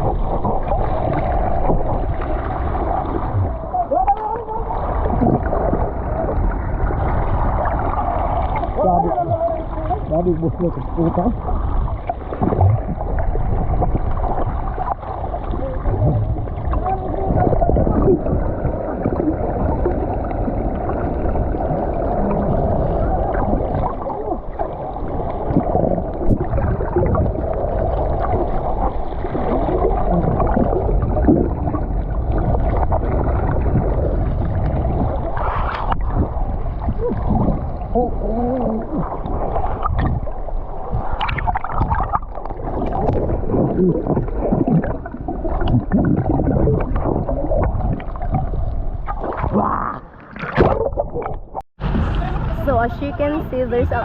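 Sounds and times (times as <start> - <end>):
wind on microphone: 0.0 - 49.8, 50.6 - 54.0
sea water rumbling: 0.0 - 54.0
faint voices: 51.8 - 54.0.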